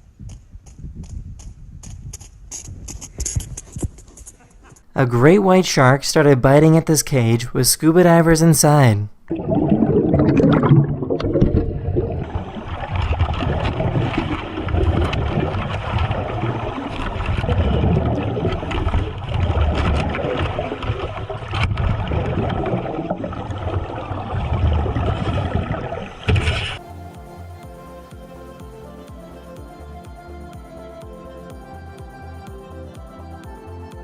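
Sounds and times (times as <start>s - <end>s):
water churning and gurgling: 8.7s - 28.4s.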